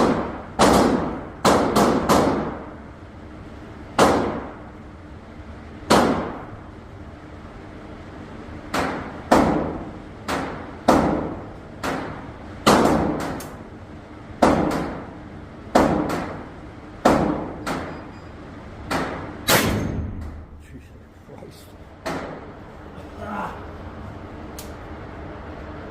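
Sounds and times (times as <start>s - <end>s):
gunshots with echo: 19.0s - 20.4s.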